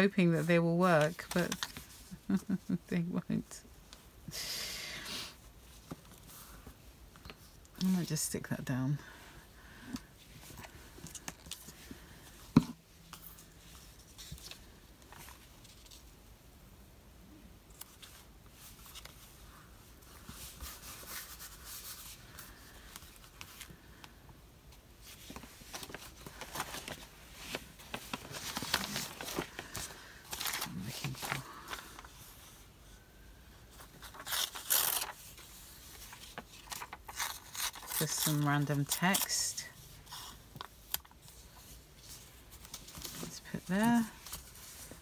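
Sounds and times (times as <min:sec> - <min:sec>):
paper and card rustling: 0:00.0 - 0:02.6, 0:25.0 - 0:32.7, 0:33.7 - 0:45.0.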